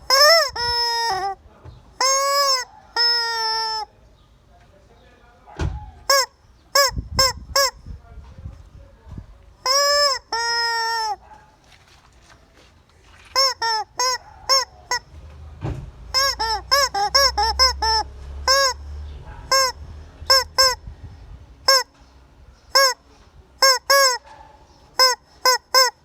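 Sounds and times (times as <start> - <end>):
chicken calling: 0.0 - 1.4, 2.0 - 4.0, 9.6 - 11.4, 13.1 - 15.1, 16.1 - 20.9, 22.7 - 26.0.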